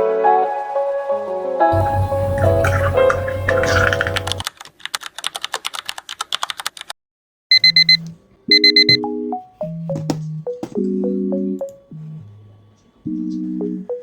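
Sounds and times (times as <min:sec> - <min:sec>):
keyboard typing: 0:02.6 - 0:06.9, 0:08.6 - 0:09.0
alarm clock beeping: 0:07.5 - 0:09.0.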